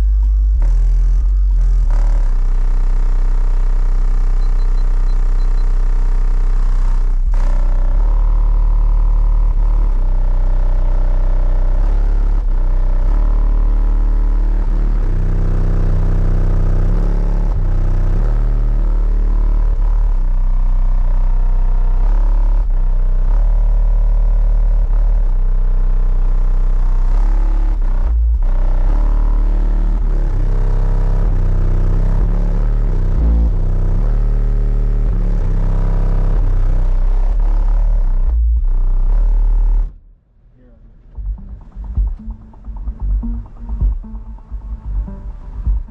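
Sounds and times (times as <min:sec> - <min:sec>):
bass-heavy music from car stereo: 0:00.0 - 0:39.9, 0:41.2 - 0:45.9.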